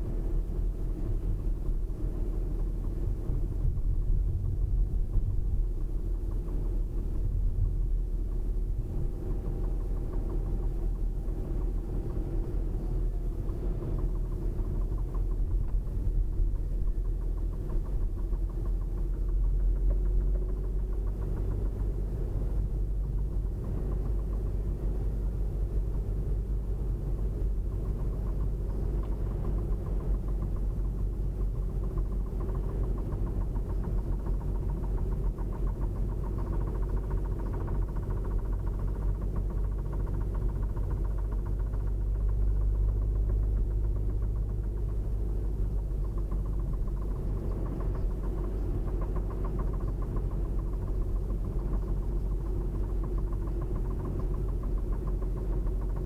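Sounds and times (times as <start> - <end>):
engine running with fast knock: 0.0 - 56.0.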